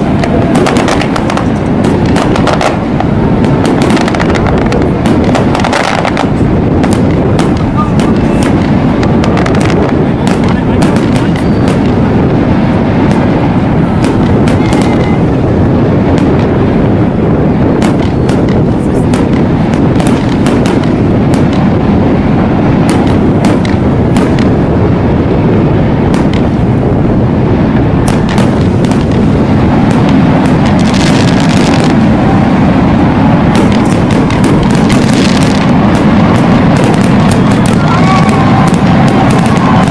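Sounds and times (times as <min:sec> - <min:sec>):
fireworks booming: 0:00.0 - 0:39.9
fireworks cracking: 0:00.0 - 0:39.9.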